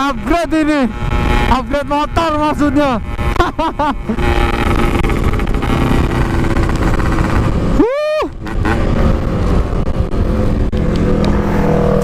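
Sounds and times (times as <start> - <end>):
two-stroke motorcycle running: 0.0 - 12.0
wind rush: 4.0 - 12.0.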